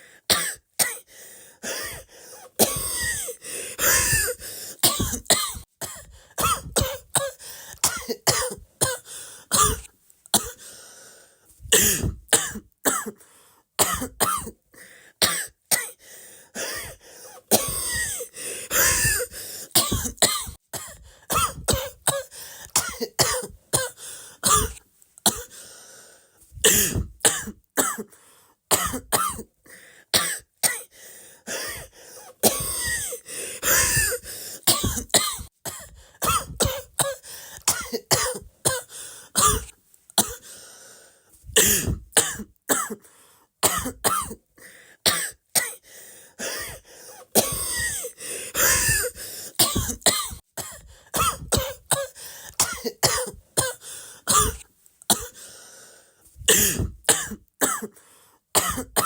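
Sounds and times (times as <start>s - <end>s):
person coughing: 0.3s - 10.7s, 11.7s - 13.2s, 13.8s - 14.6s, 16.6s - 25.6s, 26.6s - 28.1s, 28.7s - 29.5s, 31.5s - 40.5s, 41.5s - 43.0s, 43.6s - 44.4s, 46.4s - 55.4s, 56.4s - 58.0s, 58.6s - 59.0s.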